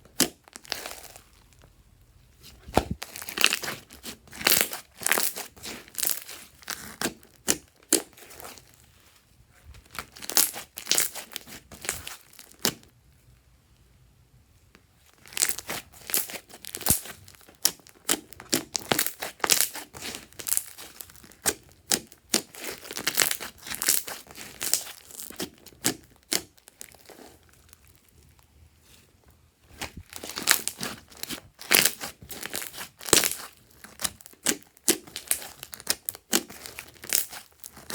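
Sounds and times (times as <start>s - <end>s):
slime squished by hand: 2.6s - 8.8s, 9.9s - 12.8s, 15.2s - 28.0s, 29.7s - 37.9s.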